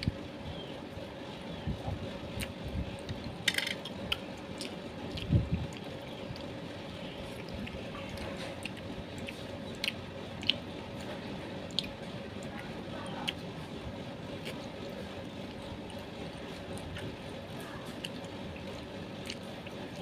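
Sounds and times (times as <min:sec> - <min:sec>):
faint steady hum: 0:00.0 - 0:20.0
person chewing: 0:02.3 - 0:12.0, 0:14.3 - 0:17.1, 0:17.8 - 0:20.0
wet mouth clicks and smacks: 0:08.6 - 0:10.7, 0:19.2 - 0:19.5.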